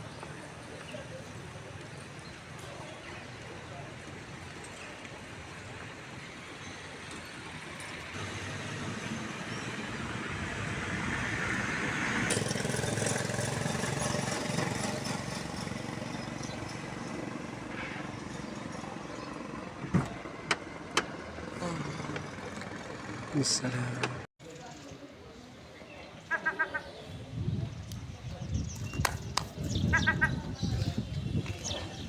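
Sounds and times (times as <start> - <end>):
motor vehicle passing: 8.1 - 24.3.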